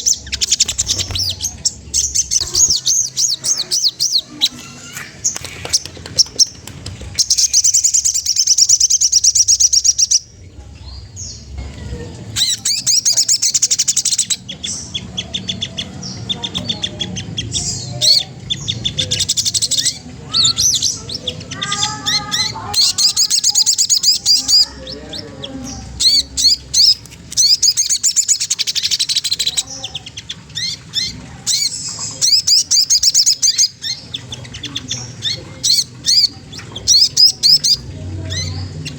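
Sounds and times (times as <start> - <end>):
bird soft chattering notes: 0.0 - 11.3.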